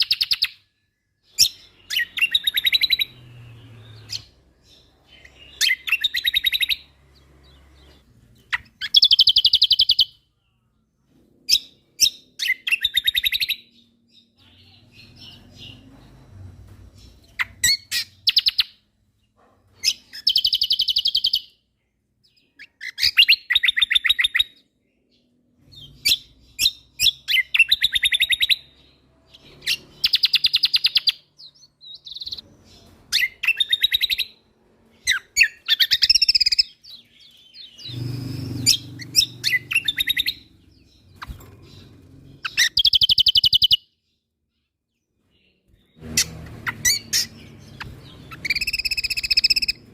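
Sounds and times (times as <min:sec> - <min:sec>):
songbird singing fast sharp notes: 0:35.1 - 0:43.9, 0:45.7 - 0:49.9.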